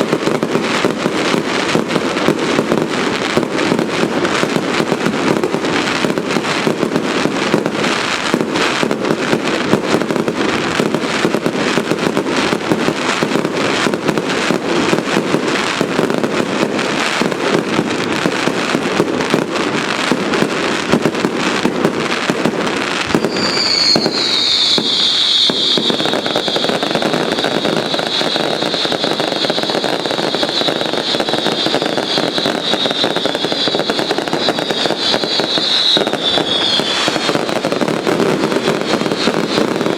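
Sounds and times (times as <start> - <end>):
fireworks crackling: 0.0 - 39.9
high shrill whistle: 23.1 - 38.0, 38.8 - 39.9.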